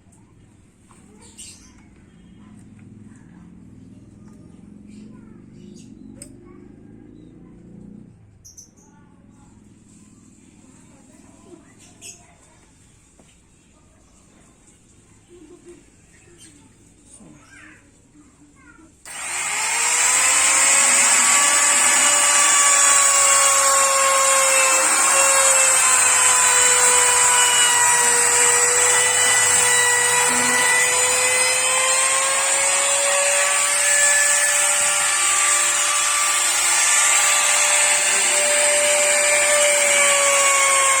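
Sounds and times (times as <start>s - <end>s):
electric router whining: 19.1s - 41.0s.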